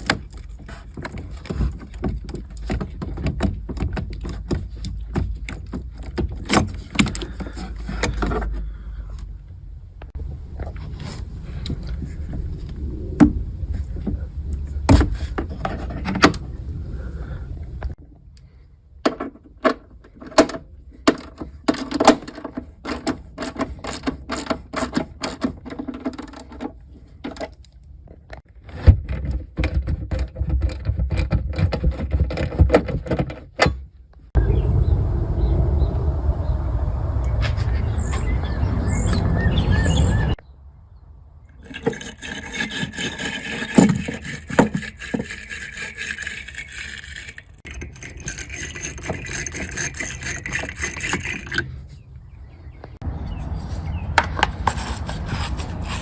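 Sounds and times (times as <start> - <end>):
tools clicking and knocking on car: 0.0 - 8.6, 19.0 - 33.9
low rumble: 9.3 - 14.9, 34.4 - 41.5.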